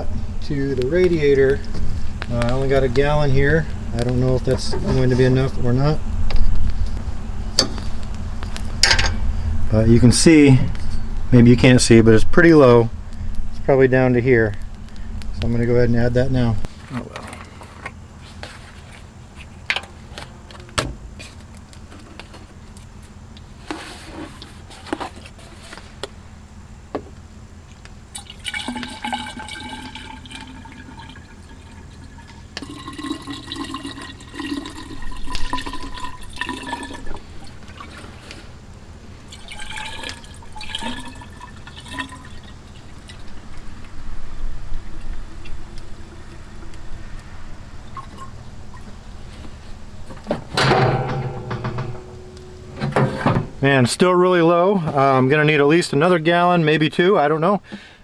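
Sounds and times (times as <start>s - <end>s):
liquid gurgling into radiator: 28.1s - 44.0s, 44.7s - 49.3s
knocks: 50.2s - 53.6s.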